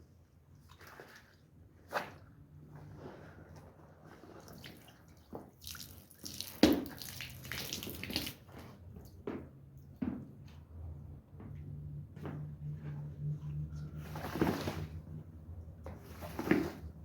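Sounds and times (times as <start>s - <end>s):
water dripping: 5.6s - 8.4s
water splashing: 5.6s - 8.4s
wet rug slapping: 5.6s - 8.6s
faint low hum: 10.4s - 16.2s.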